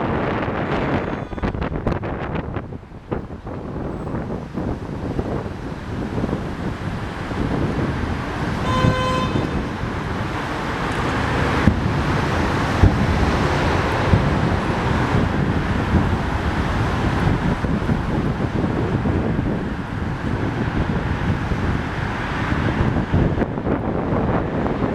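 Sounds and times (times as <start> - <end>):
wind buffeting microphone: 0.0 - 24.9
horn toot: 0.4 - 1.9, 8.5 - 9.8.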